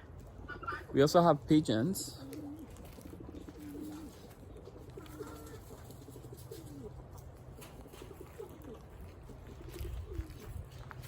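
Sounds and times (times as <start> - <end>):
pigeons cooing: 0.0 - 1.2, 1.8 - 10.7.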